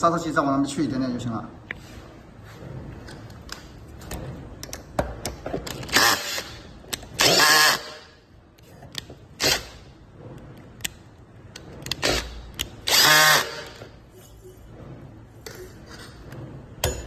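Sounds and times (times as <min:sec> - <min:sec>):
electric motor whirring: 0:11.9 - 0:13.8.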